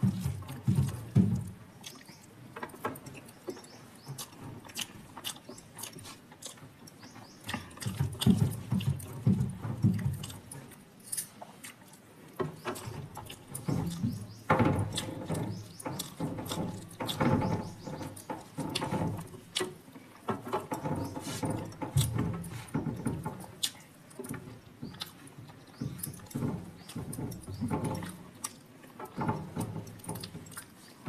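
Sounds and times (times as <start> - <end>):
chewing and lip smacking: 0.9 - 2.4, 3.0 - 9.2, 9.8 - 20.3, 23.5 - 27.1, 28.0 - 29.2, 29.9 - 31.0.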